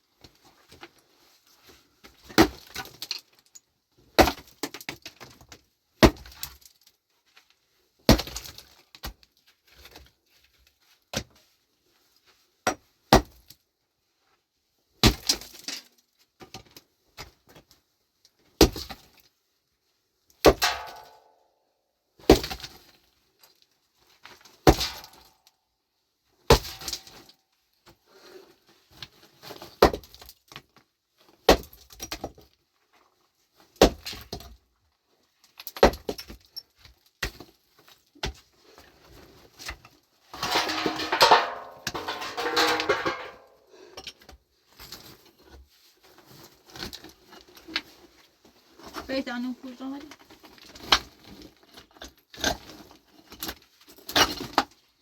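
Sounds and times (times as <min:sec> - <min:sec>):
hand tool striking rock: 0:20.5 - 0:21.2, 0:40.4 - 0:43.5.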